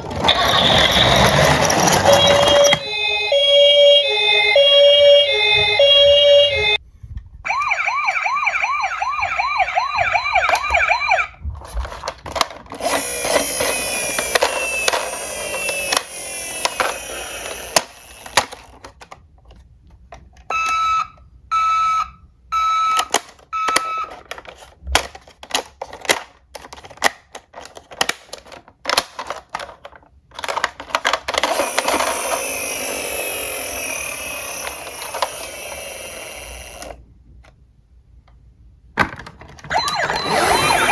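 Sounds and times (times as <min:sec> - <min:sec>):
toy cars clattering: 0:00.0 - 0:02.8, 0:11.6 - 0:20.4, 0:23.0 - 0:37.0, 0:39.0 - 0:40.9
toy siren warbling: 0:00.3 - 0:06.8, 0:07.5 - 0:11.4, 0:12.8 - 0:18.5, 0:31.4 - 0:37.0, 0:39.7 - 0:40.9.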